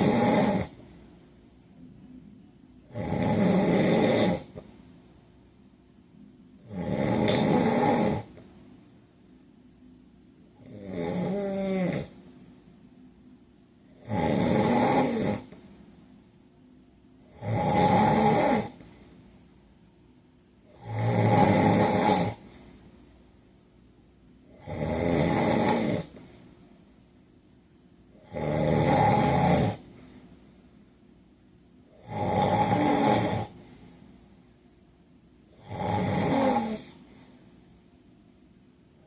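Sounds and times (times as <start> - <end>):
man snoring loudly: 0.0 - 0.8, 2.9 - 4.6, 6.6 - 8.4, 10.6 - 12.2, 14.0 - 15.6, 17.3 - 18.8, 20.7 - 22.5, 24.5 - 26.2, 28.2 - 29.9, 31.9 - 33.6, 35.6 - 37.0
quiet breathing: 0.0 - 39.0.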